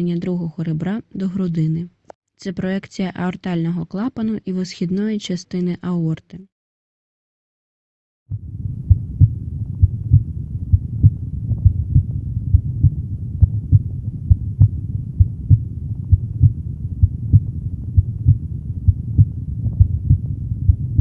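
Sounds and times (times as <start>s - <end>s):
heartbeat through stethoscope: 8.3s - 21.0s
steady low hum: 8.3s - 21.0s.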